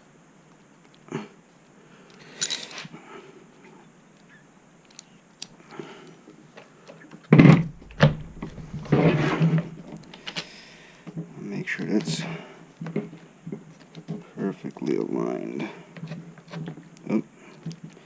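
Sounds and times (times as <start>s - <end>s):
metal parts clicking: 2.1s - 2.9s
hard knock: 7.6s - 10.0s
rattling scrape: 7.6s - 10.5s.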